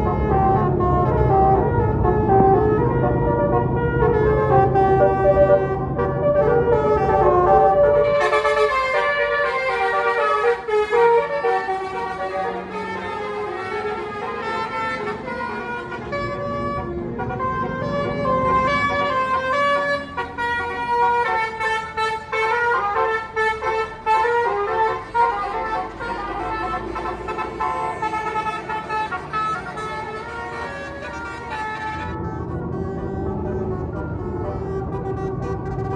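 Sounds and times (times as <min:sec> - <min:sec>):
bus engine rumbling: 0:00.0 - 0:35.9
musical air horn tune: 0:03.5 - 0:16.6.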